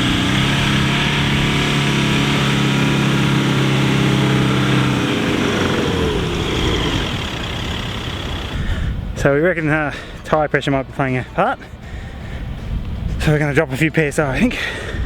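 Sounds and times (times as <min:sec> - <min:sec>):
engine revving in sand: 0:00.0 - 0:09.2.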